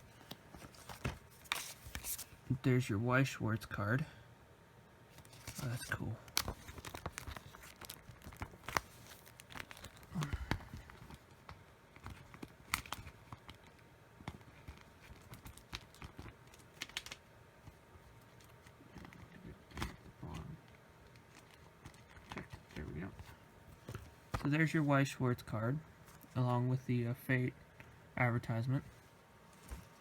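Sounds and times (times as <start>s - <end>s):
packaging rustling: 0.0s - 2.4s, 5.2s - 17.2s, 21.0s - 22.8s.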